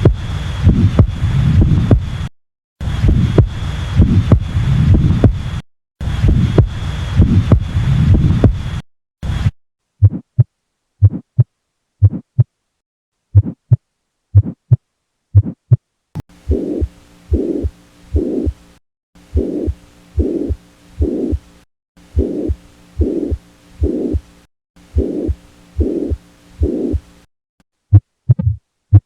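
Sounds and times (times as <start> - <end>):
rushing heart murmur: 0.0 - 2.2, 3.0 - 5.5, 6.2 - 8.7, 9.4 - 12.5, 13.4 - 13.8, 14.4 - 14.8, 15.4 - 15.8, 16.4 - 18.6, 19.3 - 21.5, 22.2 - 24.2, 25.0 - 27.0, 27.9 - 29.0
heartbeat through stethoscope: 0.0 - 2.3, 2.9 - 12.5, 13.3 - 15.8, 16.4 - 18.6, 19.3 - 21.5, 22.1 - 24.3, 24.9 - 27.0, 27.9 - 29.0
faint hum: 16.2 - 27.3.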